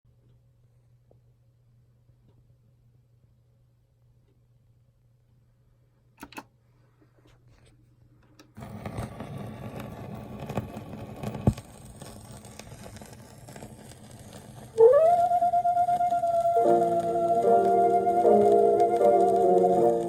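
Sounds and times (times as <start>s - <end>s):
record crackling hiss: 0.1s - 20.0s
record clicks: 6.2s - 6.5s.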